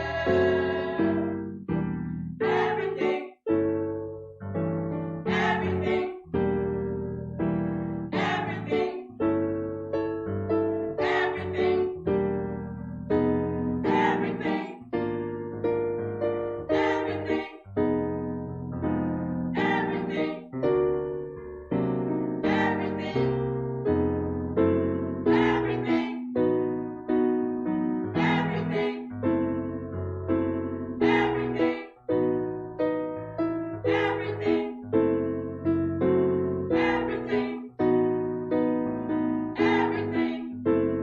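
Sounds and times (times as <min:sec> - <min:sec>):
piano playing slow chords: 0:09.0 - 0:41.0.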